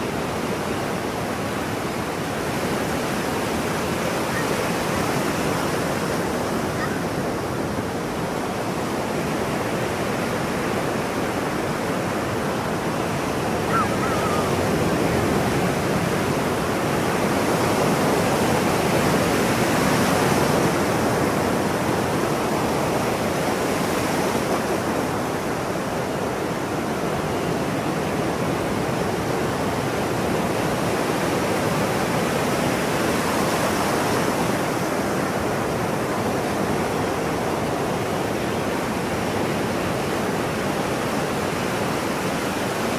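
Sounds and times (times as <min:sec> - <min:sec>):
ocean surf washing in: 0:00.0 - 0:42.9
seagull call: 0:04.3 - 0:04.6, 0:06.6 - 0:07.2, 0:13.4 - 0:15.4.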